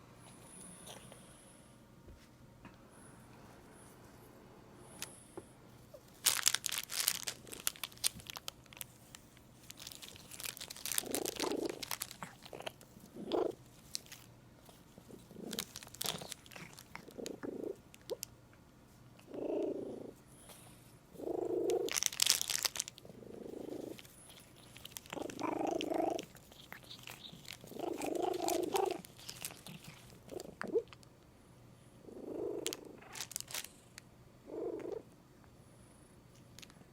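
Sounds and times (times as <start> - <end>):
plastic wrap crackling: 5.9 - 18.3, 21.7 - 31.1, 32.6 - 33.8
cat purring: 8.9 - 18.2, 19.2 - 31.0, 31.9 - 35.1.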